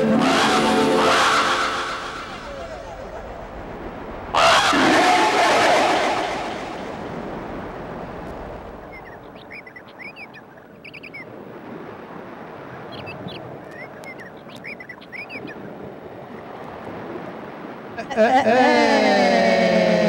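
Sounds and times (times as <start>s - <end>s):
dense noise: 0.0s - 9.3s.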